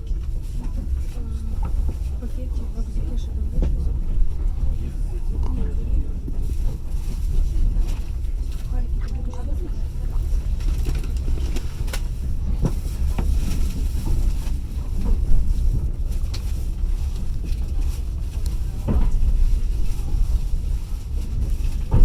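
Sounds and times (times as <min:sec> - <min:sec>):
train carriage rumbling on rails: 0:00.0 - 0:22.0.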